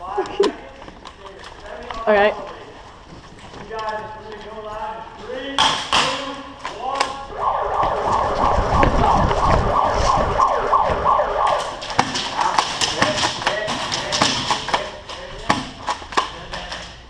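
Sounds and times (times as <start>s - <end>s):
high-pitched siren-like wail: 7.2s - 12.0s
heavy low thumps: 7.3s - 11.6s.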